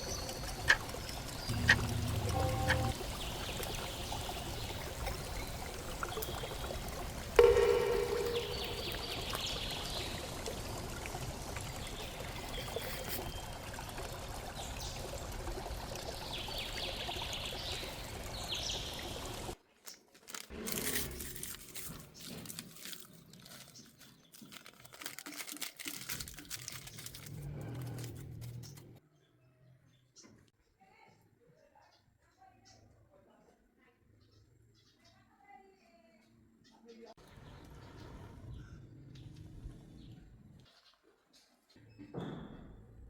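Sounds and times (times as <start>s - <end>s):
water pouring and trickling: 0.0s - 28.9s.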